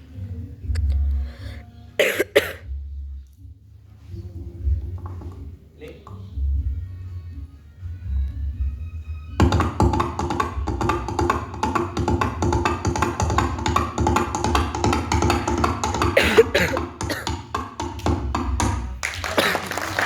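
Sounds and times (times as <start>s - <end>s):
music: 0.0s - 20.0s
coconut shell hoofbeats: 9.4s - 19.2s.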